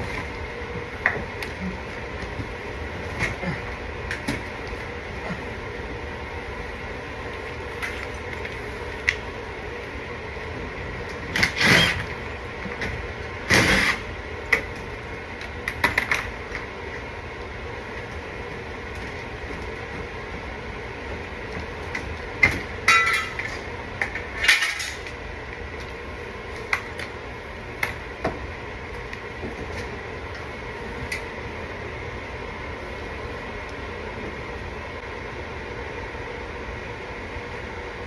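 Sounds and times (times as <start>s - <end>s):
machine hum: 0.0s - 38.0s.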